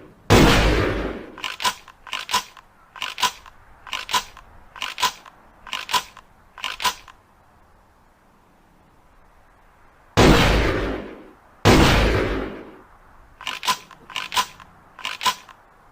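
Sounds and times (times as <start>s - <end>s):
shotgun shot: 0.3s - 2.5s, 10.2s - 12.8s
gun action clicking: 1.4s - 7.2s, 13.4s - 15.6s.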